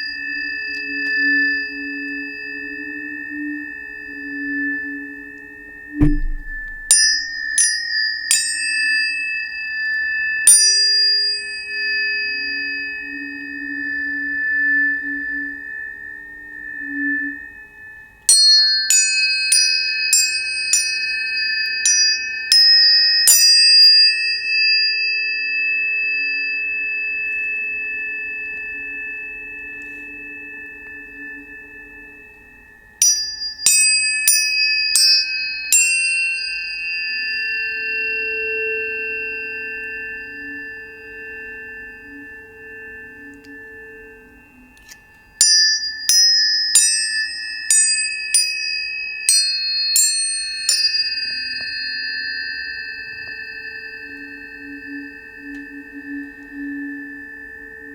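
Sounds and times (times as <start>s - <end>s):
tuning fork ringing tone: 0.0s - 57.9s
tuning fork strike click: 5.4s - 8.4s, 43.1s - 56.6s.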